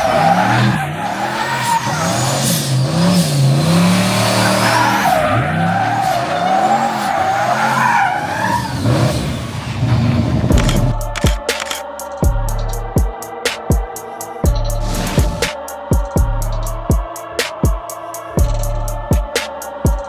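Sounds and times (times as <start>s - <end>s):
tyres squealing: 0.0s - 10.0s
car engine revving hard: 0.0s - 10.9s.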